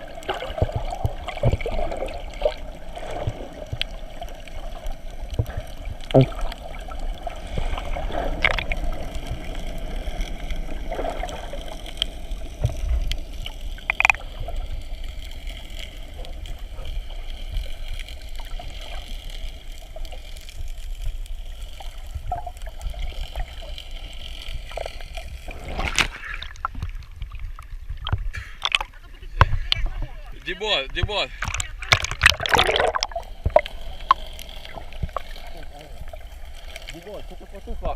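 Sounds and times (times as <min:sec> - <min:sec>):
underwater rumble with gurgling: 0:00.0 - 0:37.9
sharp underwater clicks: 0:08.3 - 0:09.3, 0:10.9 - 0:14.4, 0:25.8 - 0:29.8, 0:30.9 - 0:35.4.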